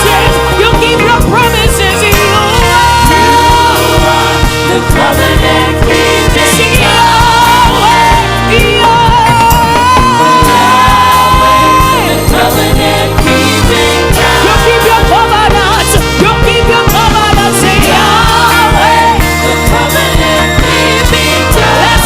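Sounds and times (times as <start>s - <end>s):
band with steady beat: 0.0s - 22.0s
voices singing gospel song: 0.0s - 22.0s.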